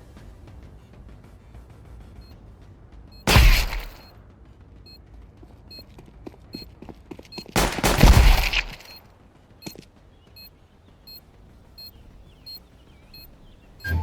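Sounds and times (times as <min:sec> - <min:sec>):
gunfire cracks: 0:03.3 - 0:04.1, 0:07.6 - 0:09.0
faint short high beeps: 0:11.8 - 0:14.0.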